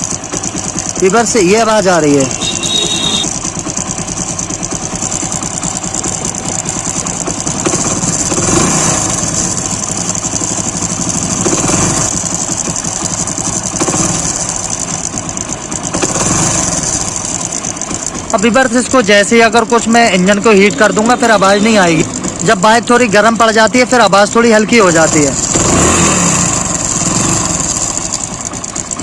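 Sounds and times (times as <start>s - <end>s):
motorcycle engine idling: 0.0s - 29.0s
person talking: 1.0s - 2.5s, 18.3s - 25.4s.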